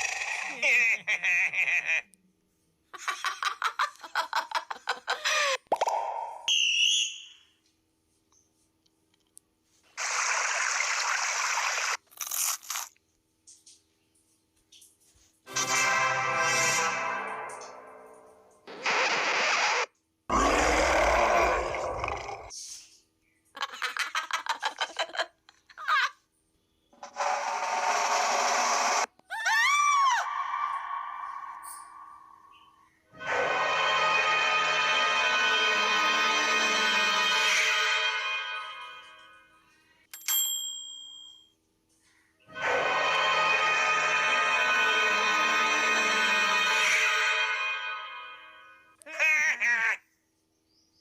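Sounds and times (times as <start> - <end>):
broken burst of noise: 27.0 - 29.1
brief wavering tone: 30.5 - 32.7.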